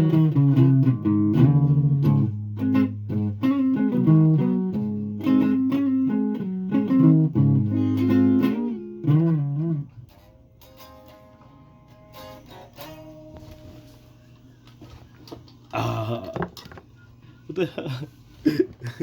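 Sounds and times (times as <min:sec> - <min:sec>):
solo guitar playing: 0:00.0 - 0:14.3.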